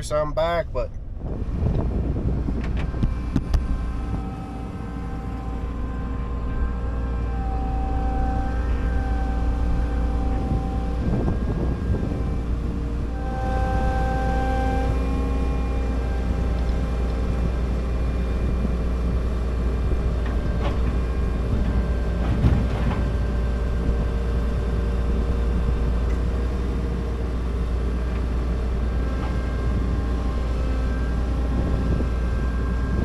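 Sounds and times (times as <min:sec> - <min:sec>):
combine engine rumble: 0:00.0 - 0:33.0.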